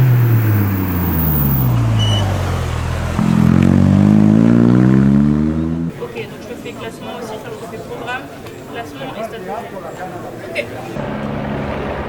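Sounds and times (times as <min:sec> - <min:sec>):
rally car engine revving: 0:00.0 - 0:05.9.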